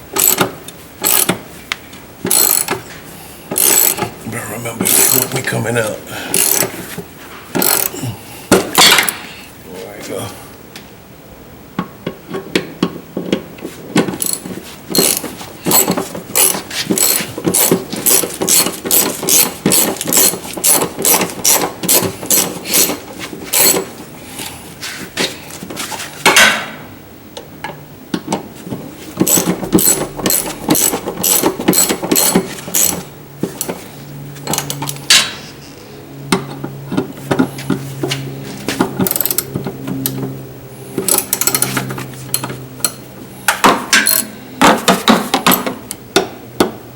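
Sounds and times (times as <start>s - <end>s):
ratchet wrench clicking: 0.2s - 1.4s, 2.3s - 2.8s, 3.5s - 4.1s, 4.9s - 5.3s, 6.3s - 6.7s, 7.6s - 8.0s, 14.2s - 23.0s, 23.6s - 23.8s, 29.2s - 33.0s, 34.5s - 35.0s, 39.0s - 40.2s, 41.0s - 43.0s, 44.1s - 44.3s.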